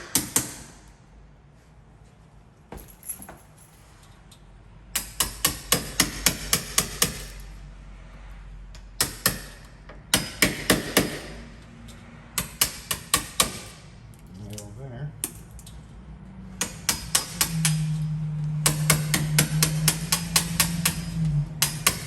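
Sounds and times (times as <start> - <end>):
hammer striking a chisel: 0.0 - 0.8, 5.0 - 7.4, 9.0 - 11.4, 12.4 - 13.8, 16.6 - 22.0.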